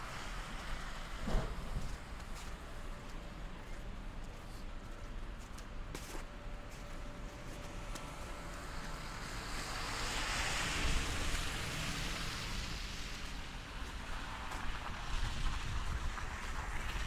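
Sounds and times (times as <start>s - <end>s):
wind buffeting microphone: 14.1s - 17.0s.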